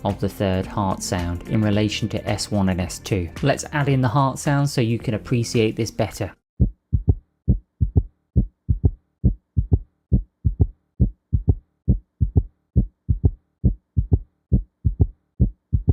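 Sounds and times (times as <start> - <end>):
heartbeat gallop rhythm: 6.6 - 15.9.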